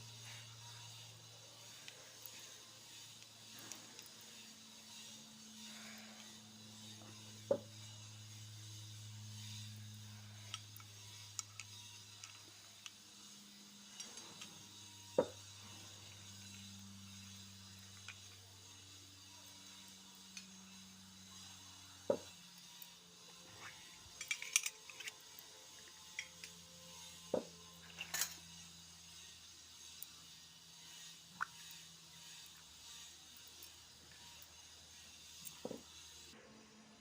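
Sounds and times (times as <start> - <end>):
toy kitchenware clinking: 24.1 - 25.2, 27.8 - 28.5.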